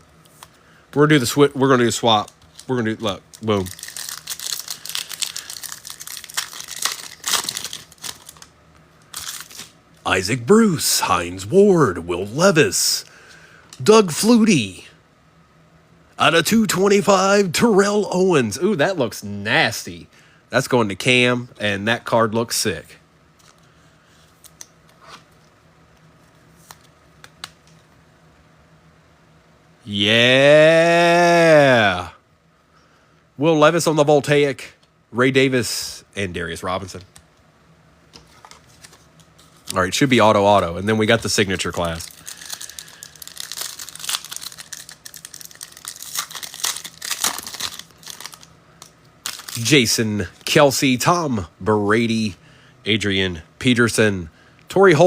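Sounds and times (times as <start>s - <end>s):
low steady hum: 0.0s - 55.0s
trading cards being handled: 1.8s - 9.8s, 23.4s - 27.9s, 38.1s - 50.6s
packaging crinkling and rustling: 2.1s - 8.5s, 9.1s - 9.8s, 41.0s - 49.9s.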